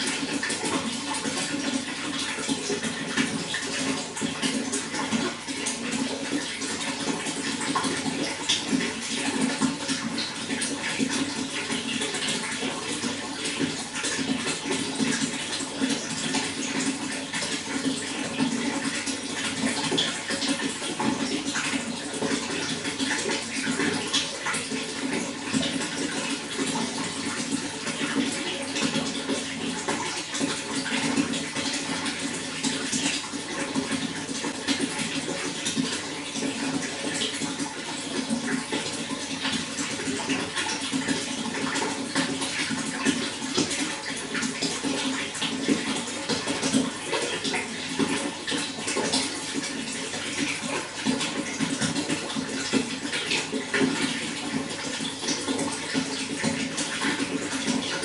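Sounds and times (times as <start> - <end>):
running water with splashes: 0.0 - 58.0.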